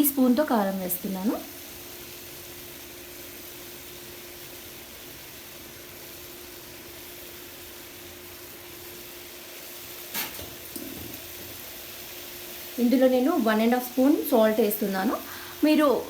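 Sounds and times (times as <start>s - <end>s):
meat sizzling in a pan: 0.0s - 16.0s
faint steady hum: 10.6s - 16.0s.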